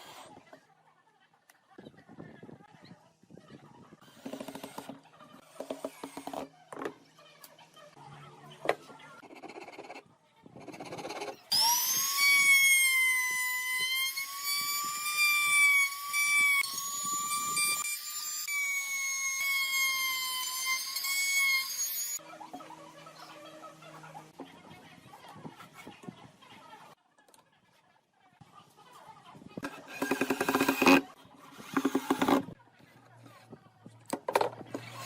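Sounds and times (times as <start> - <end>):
power tool motor whine: 11.5 - 22.2, 31.6 - 32.5.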